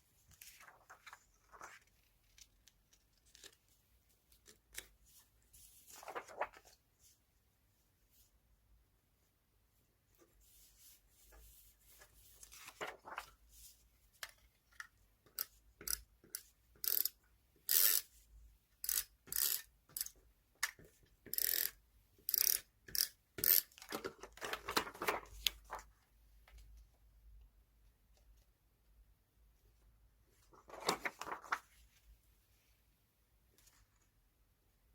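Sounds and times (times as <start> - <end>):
magazine paper rustling: 0.3 - 3.8, 5.1 - 7.1, 11.2 - 13.8, 23.9 - 26.0, 30.4 - 32.1.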